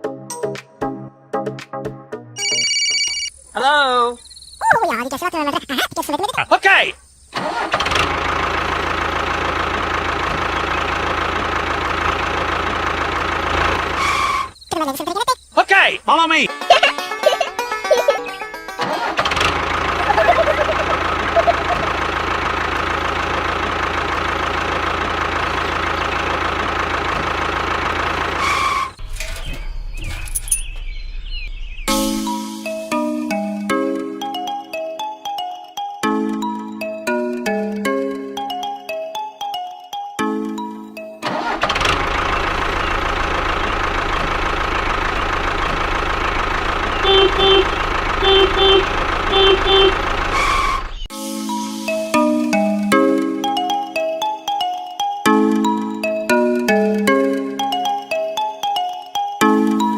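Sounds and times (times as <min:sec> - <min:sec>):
small engine running: 0:07.3 - 0:14.6, 0:18.5 - 0:29.4, 0:41.3 - 0:51.1
horn double beeps: 0:47.0 - 0:51.1.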